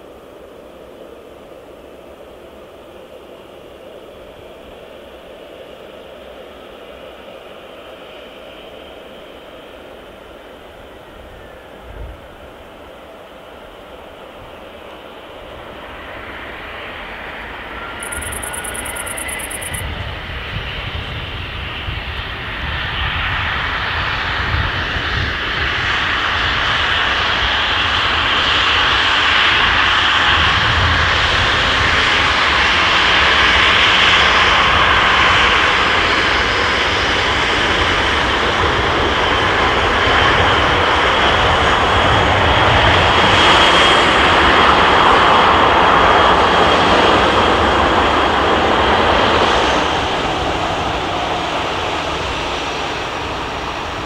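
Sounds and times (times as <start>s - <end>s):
high fan whine: 0.0s - 25.8s
jet engines on approach: 0.0s - 54.0s.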